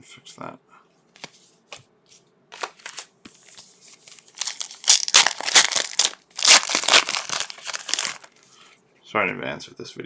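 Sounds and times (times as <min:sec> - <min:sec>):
wrapper crinkling and tearing: 0:04.1 - 0:08.4.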